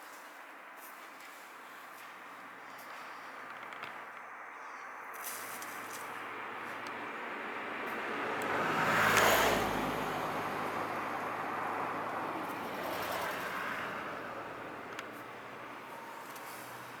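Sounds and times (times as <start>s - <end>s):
engine running: 5.6s - 17.0s
vehicle driving past: 5.6s - 17.0s.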